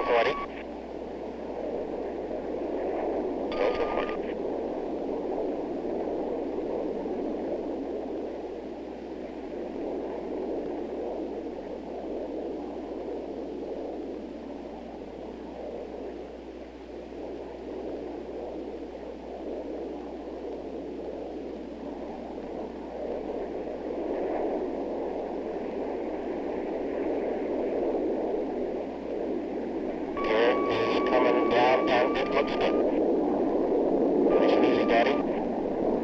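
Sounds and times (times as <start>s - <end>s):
radio hiss: 0.0s - 0.7s, 3.5s - 4.4s, 30.2s - 33.1s, 34.3s - 35.6s
low hum: 0.0s - 26.6s, 27.4s - 36.0s.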